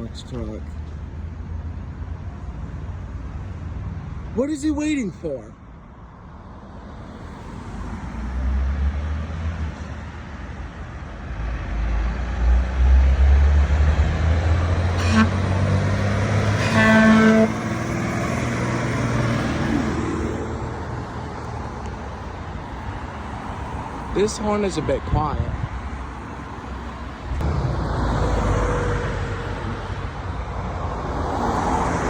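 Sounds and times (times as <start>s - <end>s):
truck engine passing: 11.4s - 25.0s
truck horn honks: 14.8s - 18.1s.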